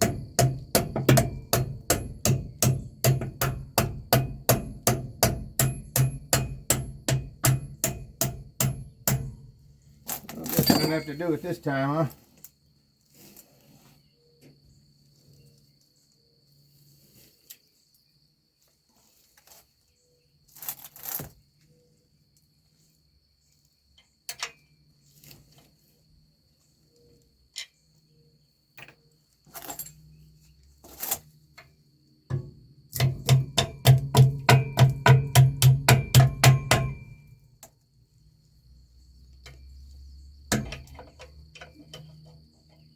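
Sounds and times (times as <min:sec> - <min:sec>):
metal tools clinking and clanking: 0:10.1 - 0:11.7
faint high-pitched tone: 0:10.6 - 0:11.8.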